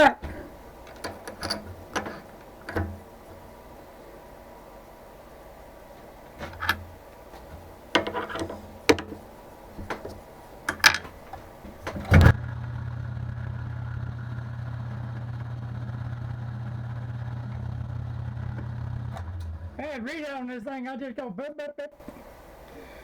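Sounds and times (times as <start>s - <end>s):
small motor humming: 0.0s - 19.9s
machine switching on clunk: 0.0s - 20.0s
light metal clicks and knocks: 0.3s - 4.3s, 5.8s - 12.3s.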